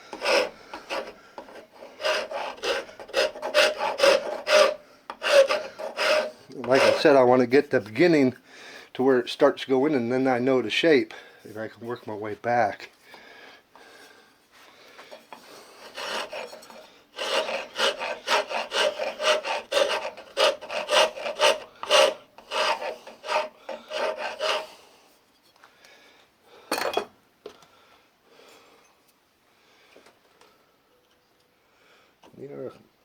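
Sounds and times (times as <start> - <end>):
rasp file scraping wood: 0.1 - 7.2, 15.4 - 24.8.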